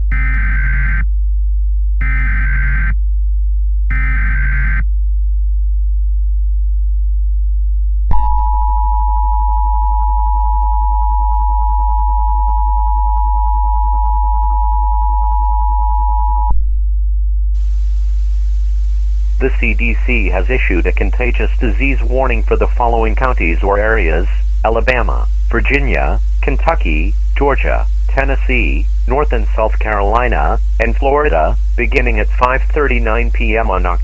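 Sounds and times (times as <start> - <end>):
low electrical hum: 17.6 - 34.0
digital data tone bursts: 17.7 - 34.0.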